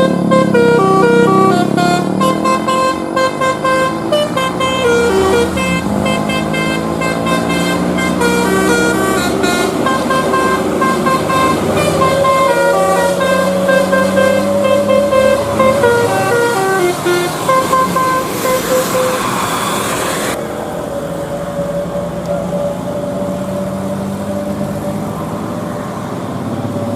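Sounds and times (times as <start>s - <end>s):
musical bus horn playing a tune: 0.0s - 20.0s
bus engine running: 0.0s - 26.9s.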